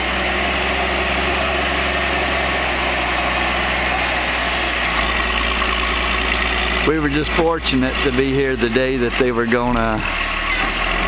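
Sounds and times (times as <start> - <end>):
diesel backhoe engine running: 0.0 - 11.0.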